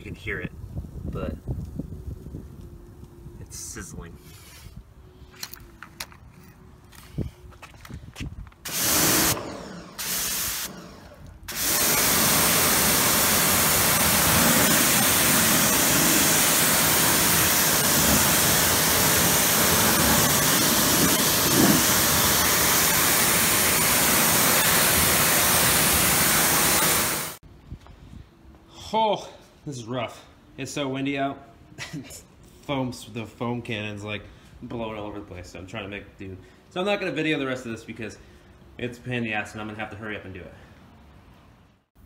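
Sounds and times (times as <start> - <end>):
pressure washer spraying: 8.6 - 27.4.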